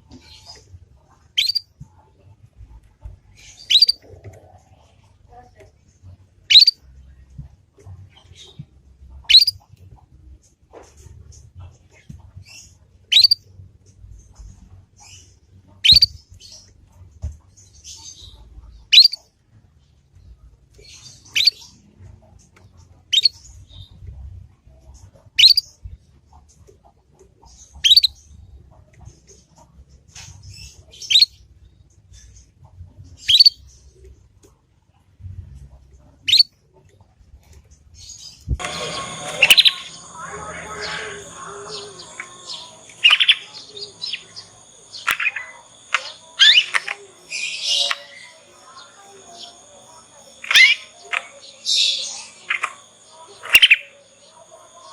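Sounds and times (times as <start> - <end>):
soft twittering: 1.4 - 1.6, 3.6 - 4.0, 6.5 - 6.7, 38.6 - 54.9
canary chirp calls: 1.4 - 1.7, 3.4 - 4.0, 6.5 - 6.8, 9.2 - 9.6, 12.5 - 13.5, 15.8 - 16.7, 17.8 - 19.3, 20.8 - 21.8, 23.1 - 23.5, 25.4 - 25.7, 27.8 - 28.2, 30.6 - 31.4, 33.2 - 33.6, 36.3 - 36.5, 38.0 - 54.9.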